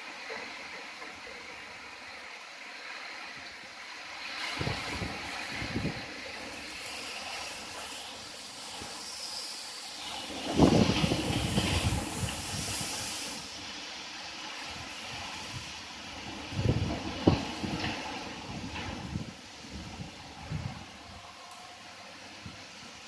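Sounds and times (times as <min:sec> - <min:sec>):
heavy rain hissing: 0:00.0 - 0:23.0
thunder crack and rumble: 0:04.3 - 0:06.8, 0:10.3 - 0:13.0, 0:14.8 - 0:21.2.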